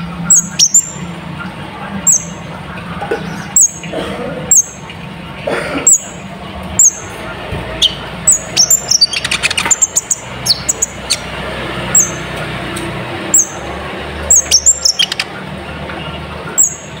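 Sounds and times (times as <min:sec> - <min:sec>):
bird chirping: 0:00.0 - 0:01.1, 0:02.0 - 0:02.5, 0:03.2 - 0:03.9, 0:04.5 - 0:04.9, 0:05.9 - 0:07.1, 0:07.7 - 0:12.4, 0:13.3 - 0:15.4, 0:16.1 - 0:17.0.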